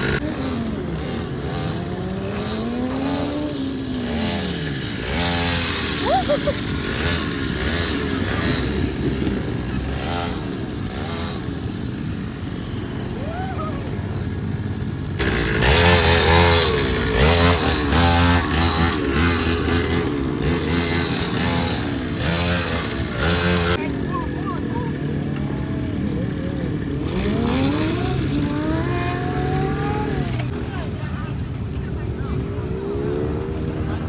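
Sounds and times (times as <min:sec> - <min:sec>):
motorcycle engines revving: 0:00.0 - 0:34.0.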